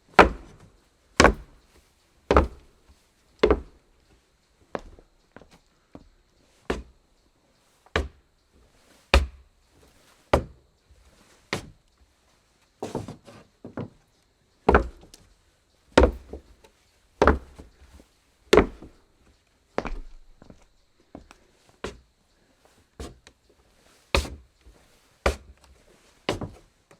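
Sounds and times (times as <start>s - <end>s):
footsteps on wooden floor: 1.2s - 1.6s, 2.3s - 2.7s, 16.0s - 16.5s, 17.2s - 17.8s, 18.5s - 19.0s, 19.8s - 22.0s, 23.0s - 23.3s, 24.2s - 26.7s.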